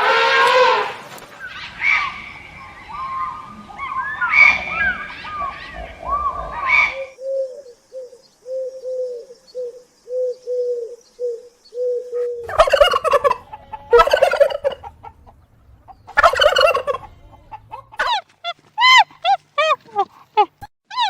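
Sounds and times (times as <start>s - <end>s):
fowl loud harsh calls: 0.0s - 7.1s, 12.4s - 20.1s
fowl soft low notes: 12.0s - 18.2s.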